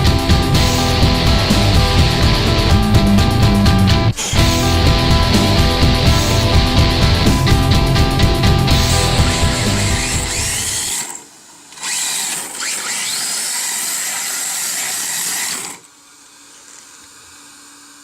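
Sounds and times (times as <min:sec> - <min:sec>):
background music: 0:00.0 - 0:10.7
toy car electric motor whirring: 0:04.2 - 0:04.4, 0:08.8 - 0:15.9.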